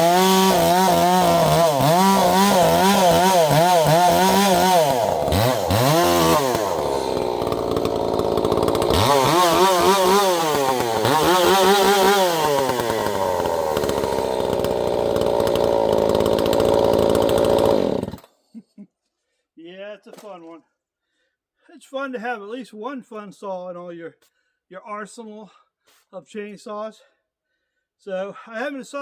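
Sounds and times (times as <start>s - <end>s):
chainsaw cutting a log: 0.0s - 18.3s.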